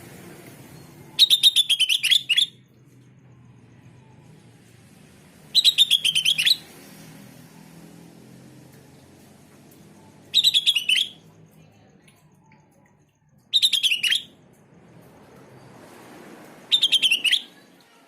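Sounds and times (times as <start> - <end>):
bird chirping phrases: 0.8 - 2.7, 5.5 - 6.7, 10.0 - 12.8, 13.4 - 14.3, 16.7 - 17.8.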